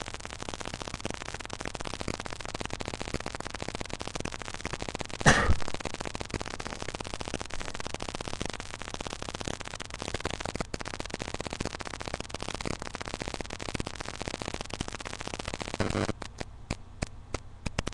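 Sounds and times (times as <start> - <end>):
crackling static hiss: 0.0 - 17.9
person sneezing: 5.3 - 5.7.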